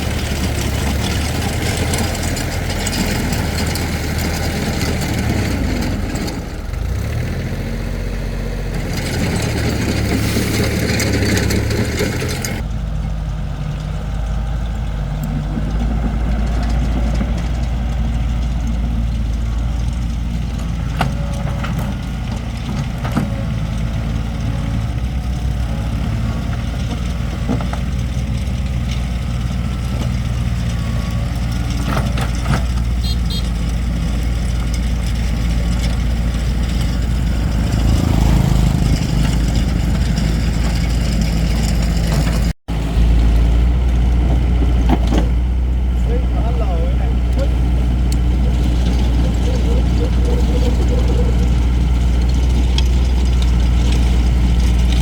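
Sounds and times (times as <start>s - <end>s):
heavy engine idling: 0.0s - 55.0s.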